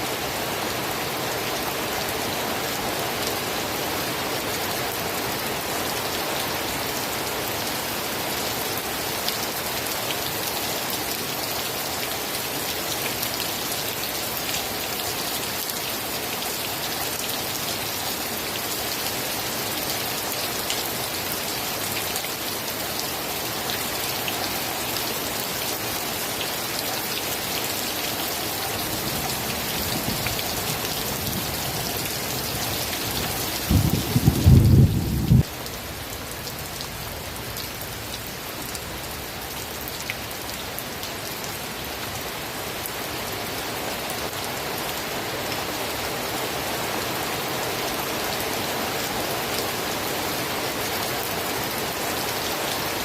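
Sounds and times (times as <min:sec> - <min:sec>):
steady rain hiss: 0:00.0 - 0:53.0.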